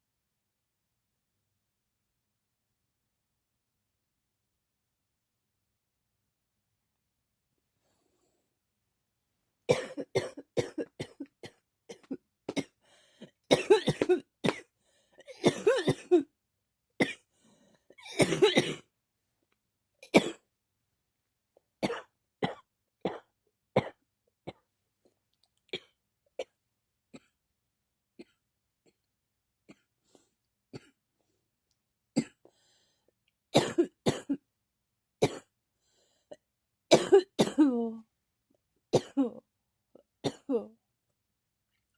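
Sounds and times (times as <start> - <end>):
person coughing: 9.7 - 12.8, 13.5 - 16.3, 18.0 - 18.9, 20.0 - 20.4, 33.6 - 34.4, 36.9 - 37.9, 39.0 - 39.4, 40.2 - 40.7.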